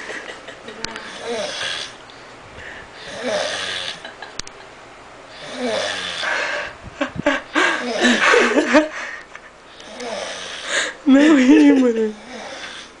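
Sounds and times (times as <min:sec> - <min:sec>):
person snoring: 0:01.0 - 0:02.0, 0:03.0 - 0:04.0, 0:05.3 - 0:06.7, 0:07.6 - 0:08.4, 0:09.8 - 0:11.0, 0:12.1 - 0:13.0.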